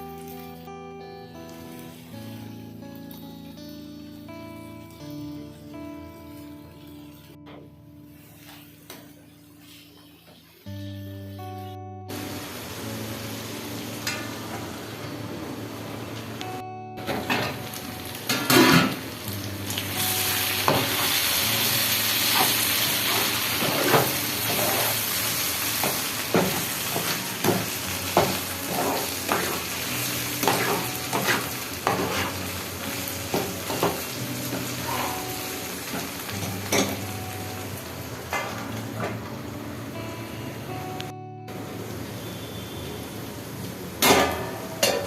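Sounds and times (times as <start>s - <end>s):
food sizzling in hot oil: 0.0s - 7.4s, 12.1s - 16.4s, 17.0s - 38.8s
spatula scraping a pan: 22.2s - 25.2s, 28.2s - 29.7s, 30.4s - 32.5s, 34.6s - 35.4s.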